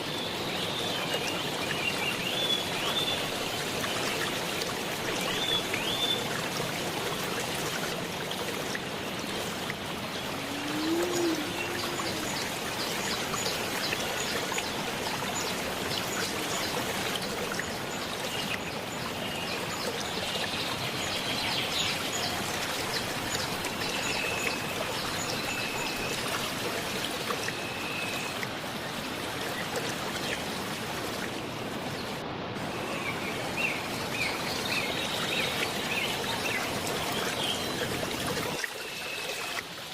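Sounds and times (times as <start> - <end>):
waterfall rushing: 7.4 - 16.0.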